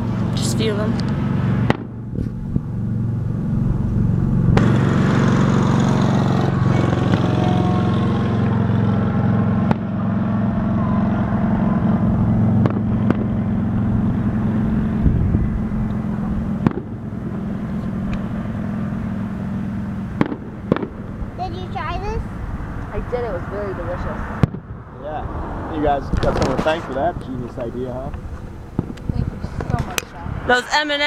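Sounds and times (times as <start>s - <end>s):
steady low drone: 0.0s - 30.5s
firework bangs: 1.5s - 2.3s, 4.5s - 11.2s, 11.8s - 13.6s, 16.0s - 21.4s, 26.0s - 30.3s.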